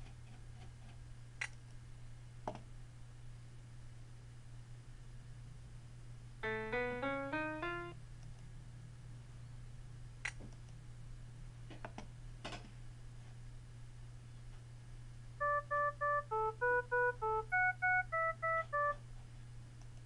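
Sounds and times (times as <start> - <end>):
steady low hum: 0.0 - 20.0
short rising piano notes: 6.4 - 8.0.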